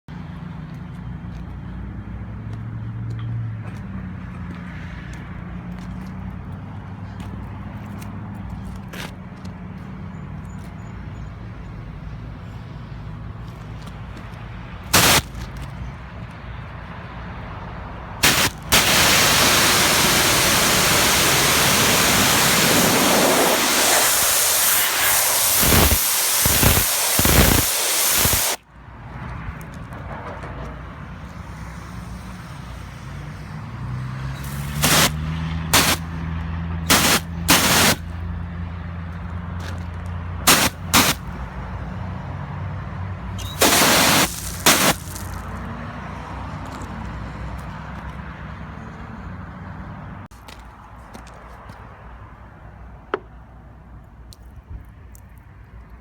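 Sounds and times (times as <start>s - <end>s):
water jet hissing: 15.0s - 15.3s, 18.2s - 28.6s, 34.4s - 36.0s, 36.9s - 38.0s, 40.5s - 41.2s, 43.4s - 45.5s.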